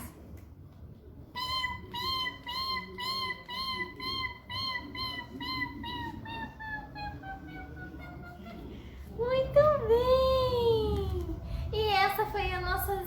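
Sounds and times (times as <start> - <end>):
imitated high chirping: 1.4 - 8.8.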